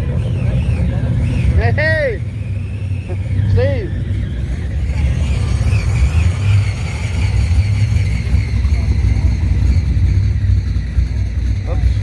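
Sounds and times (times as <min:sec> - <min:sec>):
car engine rumbling: 0:00.0 - 0:12.0.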